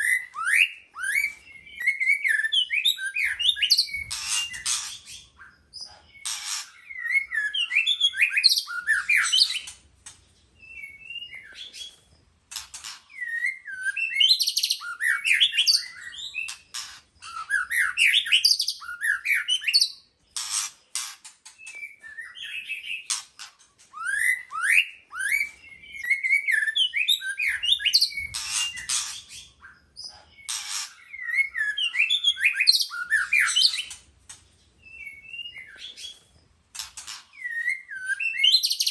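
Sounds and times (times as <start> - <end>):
bird singing whistled phrases: 13.2 - 16.6, 17.2 - 20.1, 21.6 - 23.1, 24.0 - 29.8, 30.4 - 33.9, 34.9 - 36.2, 37.4 - 38.9.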